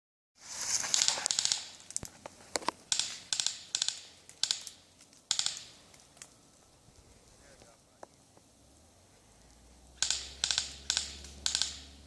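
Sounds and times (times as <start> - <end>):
airsoft gun bursts: 1.0 - 1.8, 2.9 - 4.7, 10.0 - 12.0.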